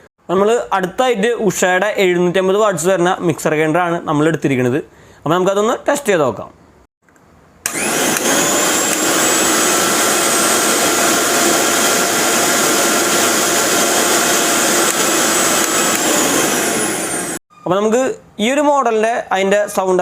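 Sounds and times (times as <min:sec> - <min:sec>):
mixer grinder motor whine: 0:07.6 - 0:17.4.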